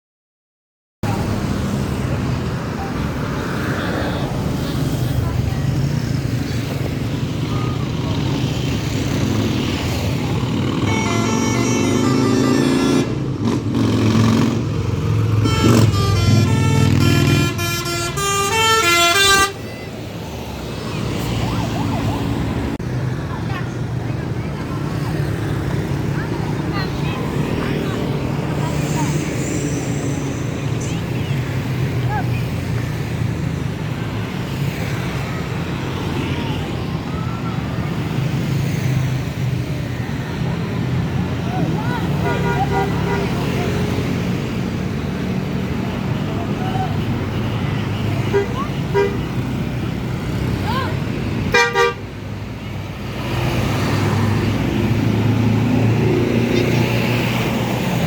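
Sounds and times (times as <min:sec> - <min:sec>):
road traffic noise: 0:01.0 - 0:58.0
bus multi-tone air horn tune: 0:10.8 - 0:13.2, 0:15.3 - 0:19.9, 0:51.5 - 0:52.0.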